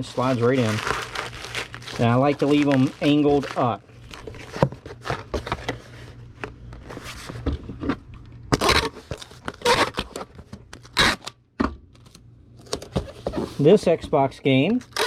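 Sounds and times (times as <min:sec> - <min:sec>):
packing tape tearing off roll: 0:00.0 - 0:05.8, 0:08.5 - 0:11.4, 0:14.8 - 0:15.0
bubble wrap crinkling: 0:00.0 - 0:06.1, 0:08.5 - 0:11.3
cardboard scraping: 0:00.0 - 0:06.2, 0:06.8 - 0:11.2.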